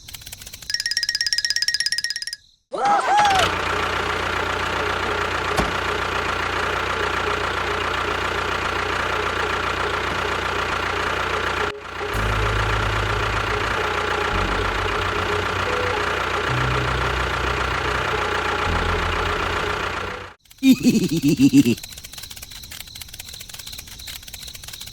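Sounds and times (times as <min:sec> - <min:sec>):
motor whining: 0:03.4 - 0:20.4.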